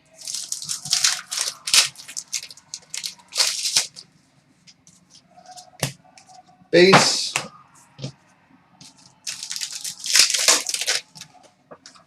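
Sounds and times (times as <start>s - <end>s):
card wrapper crinkling: 0.0s - 4.0s, 8.8s - 11.4s.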